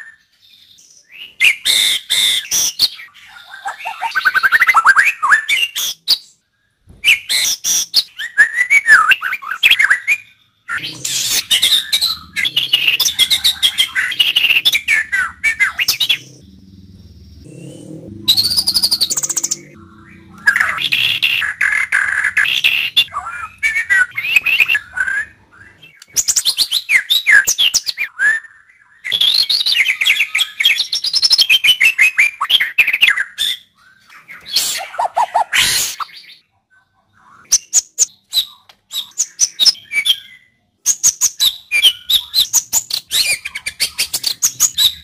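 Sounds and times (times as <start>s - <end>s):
bird singing whistles and chatter: 17.4s - 36.4s, 37.4s - 45.0s.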